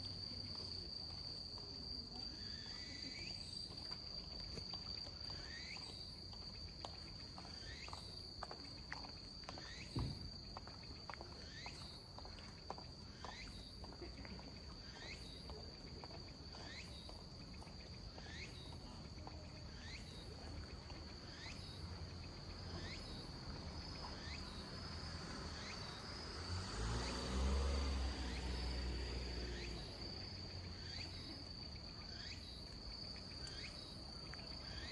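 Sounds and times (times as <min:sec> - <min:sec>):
cicada singing: 0:05.2 - 0:08.4, 0:09.6 - 0:12.3, 0:14.6 - 0:34.9
high insect trill: 0:16.6 - 0:34.9.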